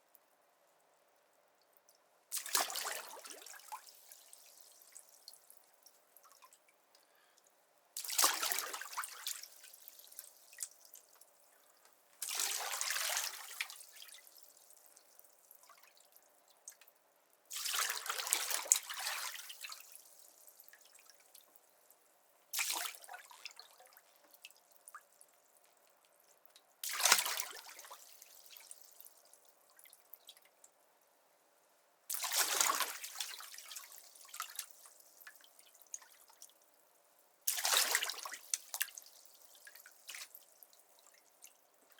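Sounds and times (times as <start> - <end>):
water dripping and trickling: 1.6 - 19.0.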